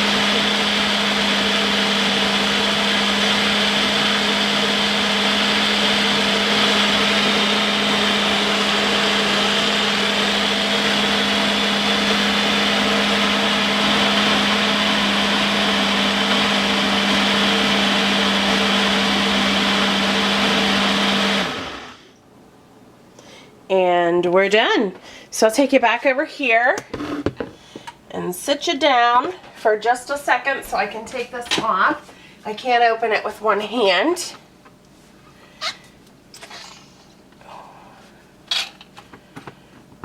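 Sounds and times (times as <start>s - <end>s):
blender running: 0.0s - 22.1s.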